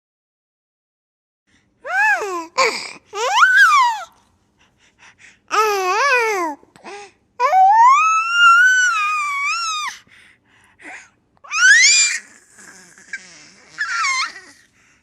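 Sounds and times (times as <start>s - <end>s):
baby squealing: 3.2s - 4.1s, 11.5s - 14.6s
baby breathing: 4.6s - 5.6s.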